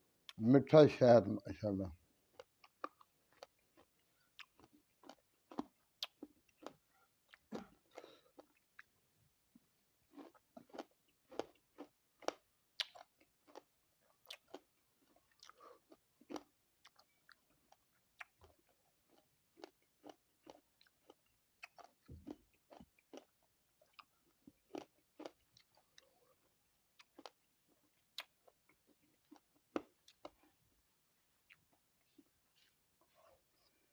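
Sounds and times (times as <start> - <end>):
chewing crunchy seeds: 2.3 - 9.0, 9.6 - 33.9.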